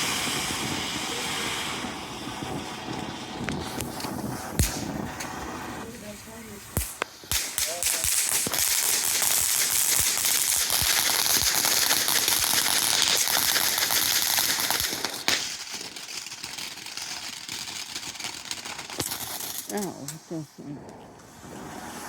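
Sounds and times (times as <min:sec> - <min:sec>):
firework fountain hissing and crackling: 0:00.0 - 0:22.0
sharp pop: 0:03.5 - 0:05.4, 0:06.8 - 0:09.1.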